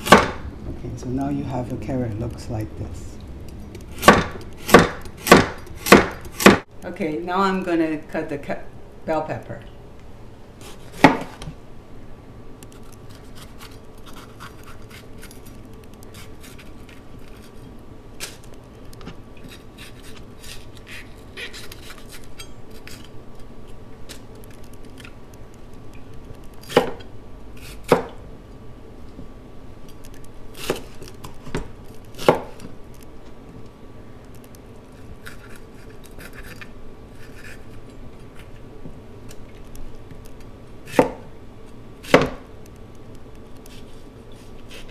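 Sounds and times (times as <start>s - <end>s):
knife slicing pepper: 3.8s - 6.6s, 19.4s - 23.1s, 26.6s - 27.0s, 30.5s - 31.4s, 40.8s - 41.3s.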